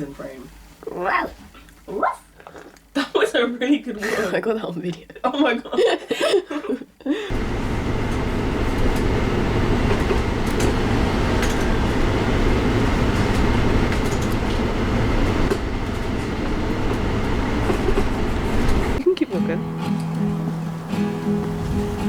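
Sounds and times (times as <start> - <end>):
vehicle rumbling in motion: 7.3 - 19.0, 20.5 - 22.0.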